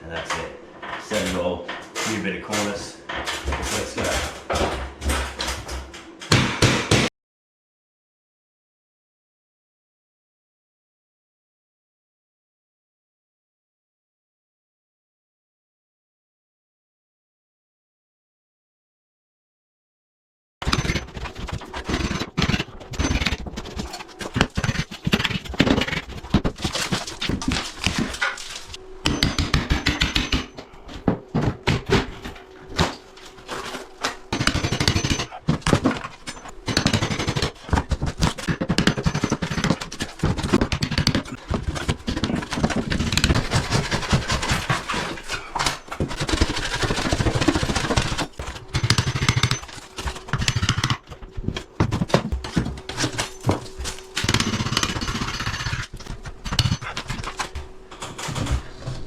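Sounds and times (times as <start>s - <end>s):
sawing plasterboard: 20.6s - 30.6s, 31.3s - 57.6s
scraping on board: 20.6s - 59.0s.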